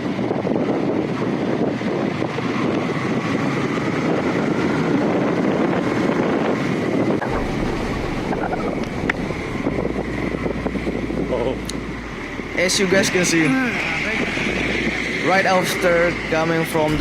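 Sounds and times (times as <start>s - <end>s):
motorcycle engine running: 0.0s - 15.2s
wind noise on microphone: 0.0s - 17.0s
deep low rumble: 6.6s - 15.3s.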